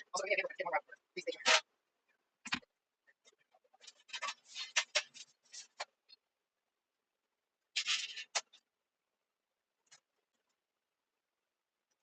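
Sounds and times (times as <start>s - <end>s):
rustling scrape with sharp click: 7.8s - 8.6s
small clicks and rustles: 9.8s - 10.7s.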